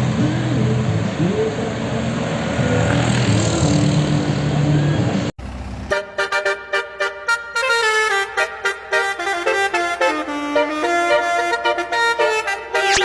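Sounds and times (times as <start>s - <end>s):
road noise: 0.0s - 7.6s
bus engine: 0.0s - 13.0s
people's voices: 0.1s - 1.9s
musical horn playing tune: 5.9s - 13.0s.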